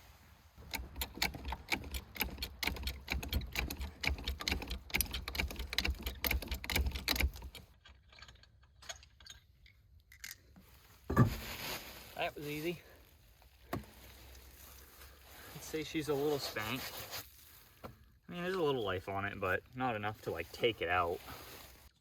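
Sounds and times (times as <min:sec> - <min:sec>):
hand tools clicking on car wheel: 0:00.6 - 0:07.8.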